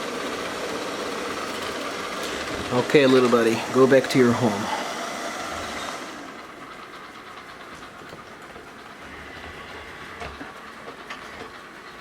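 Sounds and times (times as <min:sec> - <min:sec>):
robot vacuum whirring: 0:00.3 - 0:06.6.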